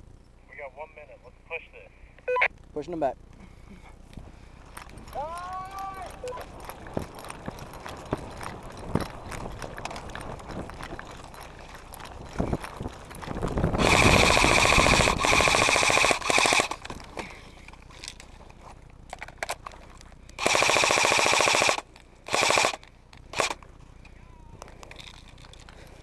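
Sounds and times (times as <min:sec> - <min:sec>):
gearbox whine: 0:04.0 - 0:26.0
airsoft rifle firing bursts: 0:13.8 - 0:16.9, 0:20.4 - 0:23.6.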